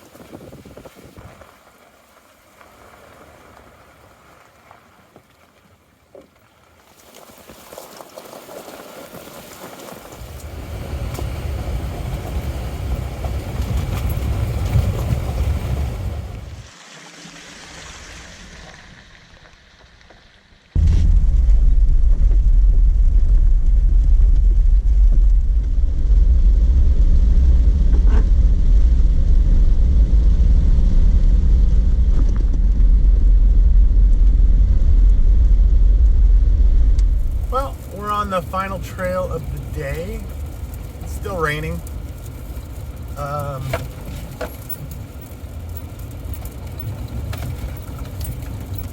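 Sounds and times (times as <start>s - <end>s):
tyre and road rumble: 0.0s - 16.8s, 17.9s - 48.9s
rain hiss: 0.0s - 20.9s, 36.9s - 48.9s.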